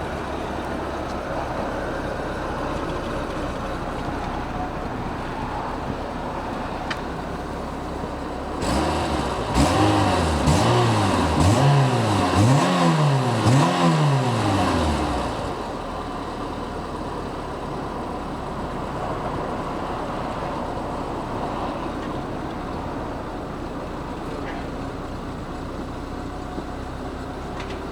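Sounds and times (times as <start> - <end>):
car engine idling and revving: 0.0 - 27.9.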